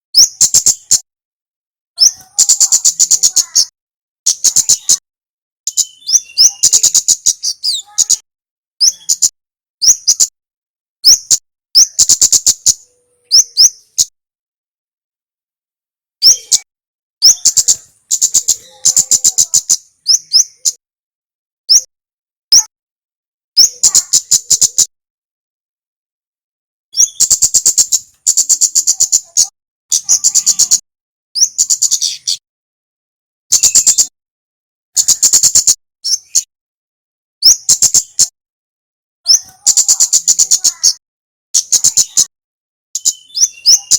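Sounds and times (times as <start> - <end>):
bird chip notes and trills: 0.2 - 1.1, 2.0 - 3.7, 4.3 - 5.0, 5.7 - 8.2, 11.0 - 14.1, 16.2 - 20.8, 26.9 - 30.8, 31.4 - 32.4, 33.5 - 34.1, 39.3 - 41.0, 41.6 - 42.3, 43.0 - 43.9.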